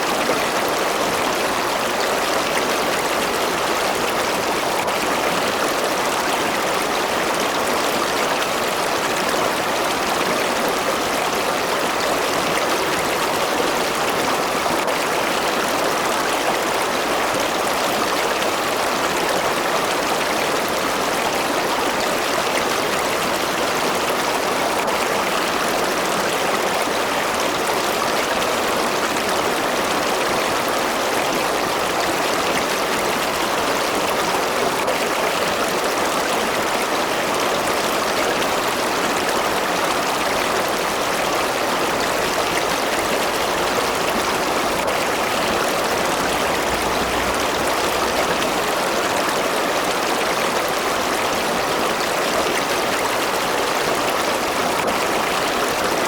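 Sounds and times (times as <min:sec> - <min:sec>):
water rushing over rocks: 0:22.8 - 0:56.0.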